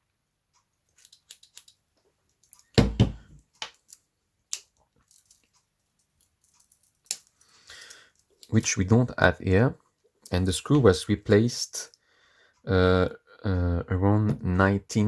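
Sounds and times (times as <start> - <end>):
heavy double knock: 2.8 - 3.4.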